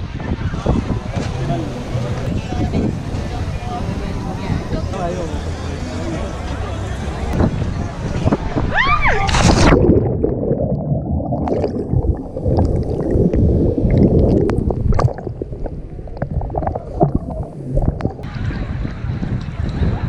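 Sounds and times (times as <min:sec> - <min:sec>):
underwater water sloshing: 0:09.3 - 0:18.3
bubbles popping: 0:09.4 - 0:18.3.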